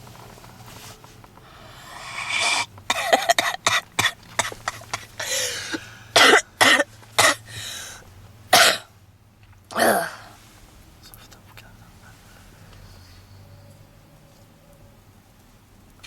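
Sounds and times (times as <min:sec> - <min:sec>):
wheezy indrawn breath: 0:01.4 - 0:06.2, 0:07.2 - 0:08.1
woman coughing: 0:02.2 - 0:07.6, 0:08.5 - 0:08.9, 0:09.8 - 0:10.2.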